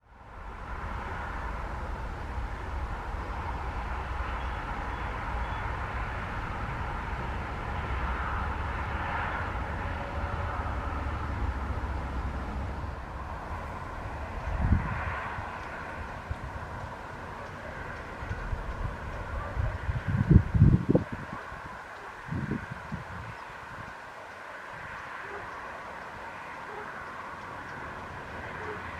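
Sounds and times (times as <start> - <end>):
distant jet engine whine: 0.0 - 28.9
wind buffeting microphone: 0.4 - 26.3.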